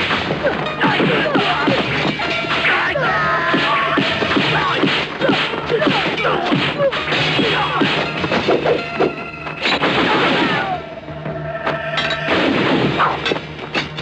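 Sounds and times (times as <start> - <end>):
background music: 0.0 - 14.0
punch and kick hits: 3.5 - 8.5.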